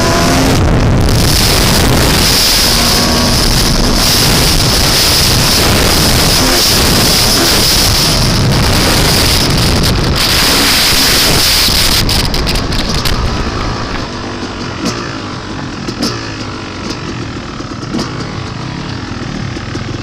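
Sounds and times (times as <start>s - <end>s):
wind noise on microphone: 0.0s - 14.4s
dirt bike engine: 0.0s - 20.0s.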